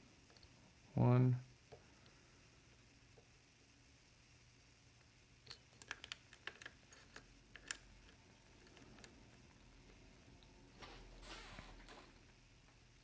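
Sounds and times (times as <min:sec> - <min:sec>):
lock pick clicking: 0:05.5 - 0:10.0.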